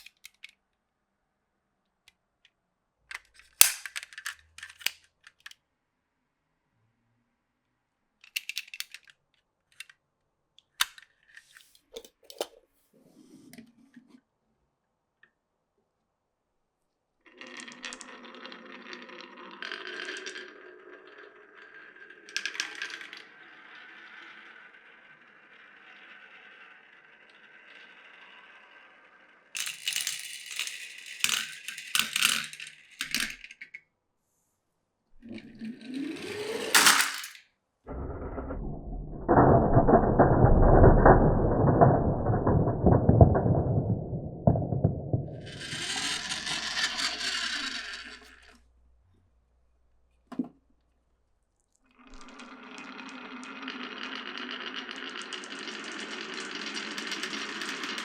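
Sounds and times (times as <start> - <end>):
marbles rolling: 17.3 - 33.6, 35.2 - 48.6, 52.0 - 58.0
low rumbling marble roll: 17.4 - 29.5, 35.2 - 36.9, 37.9 - 48.6, 52.1 - 58.0
marbles clacking: 35.2 - 48.5, 53.8 - 58.0.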